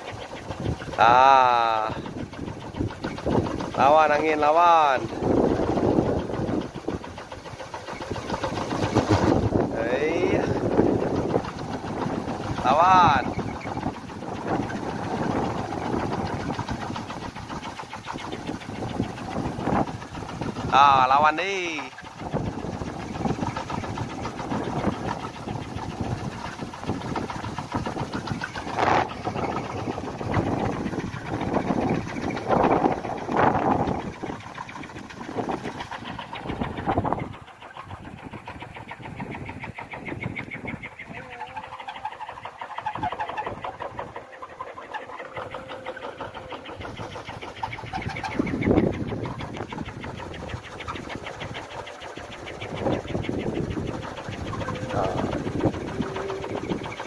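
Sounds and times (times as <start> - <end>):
wooden wind propeller whirring: 0.0 - 57.0.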